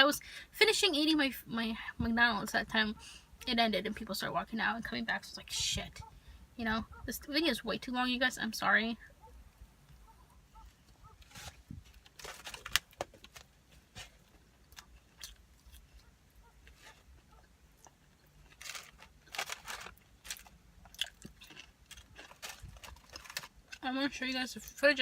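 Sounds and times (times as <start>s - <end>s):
chewing food: 14.2s - 23.8s.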